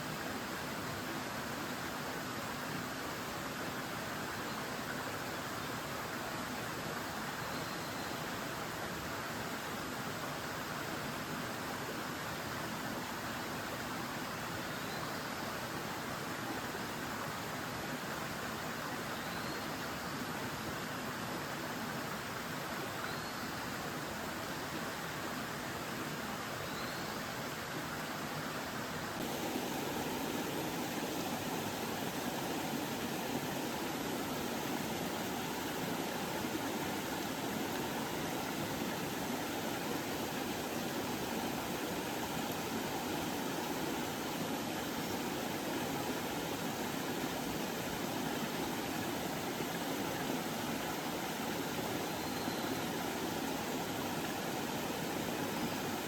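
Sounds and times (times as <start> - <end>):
mountain stream rushing: 0.0 - 56.0
faint high chirps: 52.1 - 53.0.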